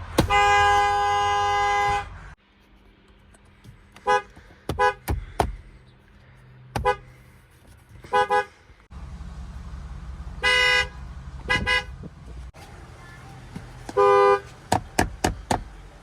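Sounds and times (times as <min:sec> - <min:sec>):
car horn short beeps: 0:10.4 - 0:12.0.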